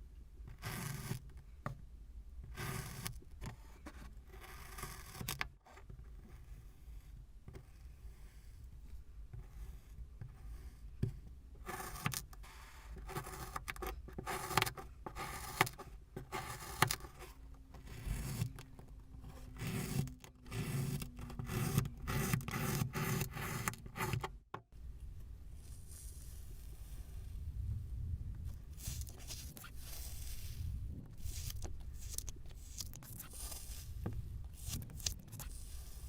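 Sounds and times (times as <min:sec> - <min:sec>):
kinetic sand scraped by hand: 0:25.6 - 0:27.5, 0:28.5 - 0:36.0.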